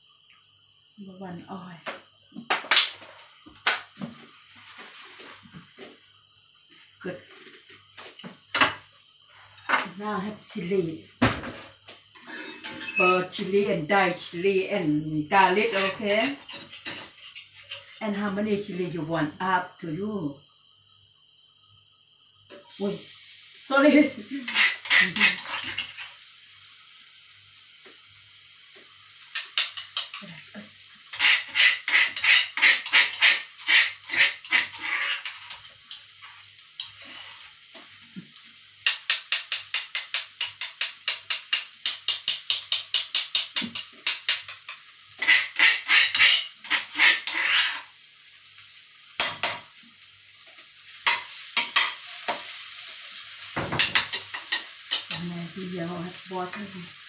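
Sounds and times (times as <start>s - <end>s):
kitchen utensil striking: 49.2s - 49.6s, 53.6s - 55.2s.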